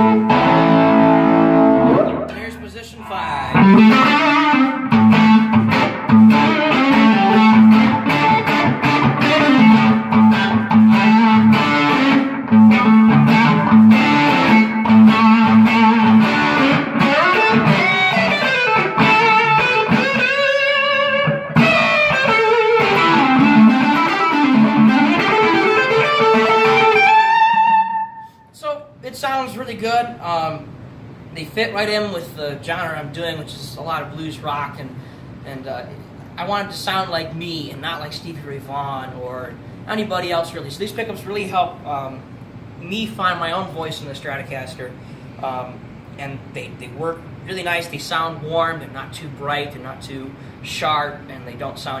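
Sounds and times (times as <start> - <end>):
electric guitar blues-rock riff: 0.0 - 2.3, 3.5 - 28.4.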